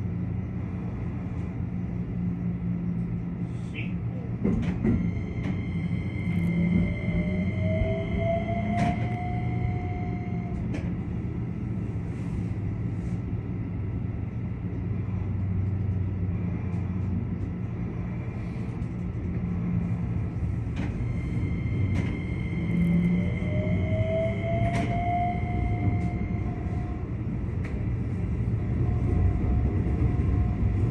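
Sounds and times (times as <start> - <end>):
wheels rumbling on rail: 0.0 - 30.9
train motor whine: 4.4 - 11.8, 18.0 - 30.9.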